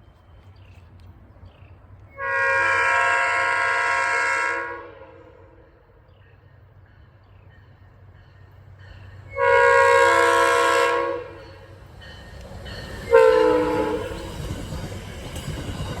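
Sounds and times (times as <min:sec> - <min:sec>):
train rumbling: 0:00.0 - 0:16.0
train air horn blasts: 0:02.1 - 0:05.6, 0:09.3 - 0:11.5, 0:13.1 - 0:14.2.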